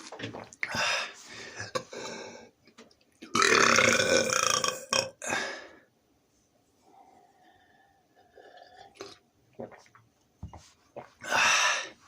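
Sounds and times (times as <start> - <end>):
man burping: 3.3 - 5.4.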